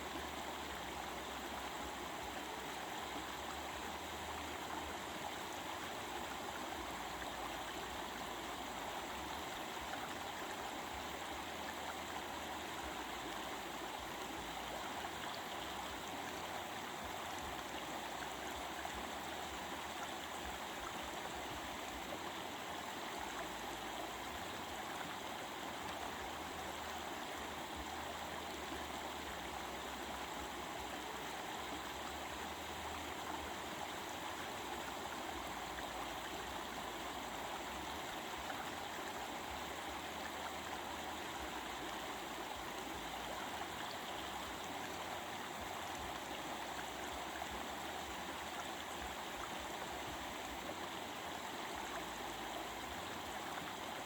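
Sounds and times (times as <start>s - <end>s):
water running over rocks: 0.0s - 54.0s.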